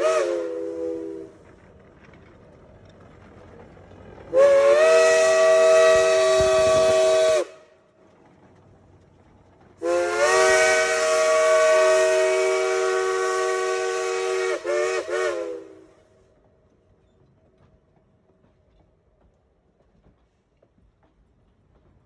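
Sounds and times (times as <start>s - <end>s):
steam locomotive whistle blasts: 0.0s - 1.4s, 4.3s - 7.7s, 9.8s - 16.0s.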